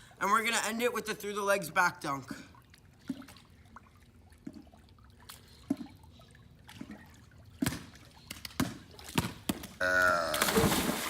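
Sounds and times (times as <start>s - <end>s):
pool water trickling and lapping: 0.0s - 11.0s
water splashing: 2.4s - 11.0s.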